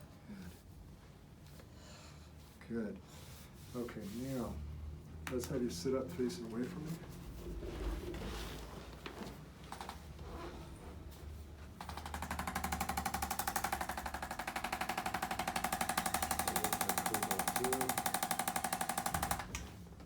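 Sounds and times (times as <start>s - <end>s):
electric massager hammering: 11.8s - 20.0s.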